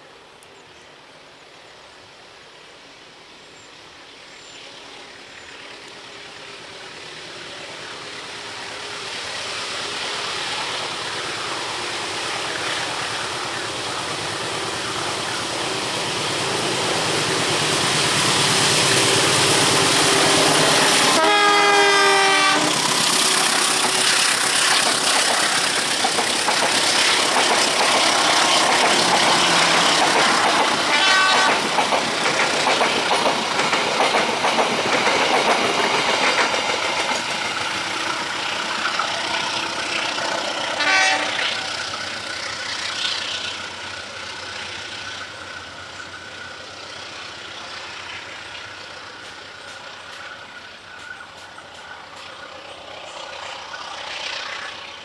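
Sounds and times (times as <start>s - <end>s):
train wheels clattering on rails: 5.1s - 55.0s
train horn: 20.0s - 24.8s, 29.6s - 31.7s, 40.7s - 41.9s.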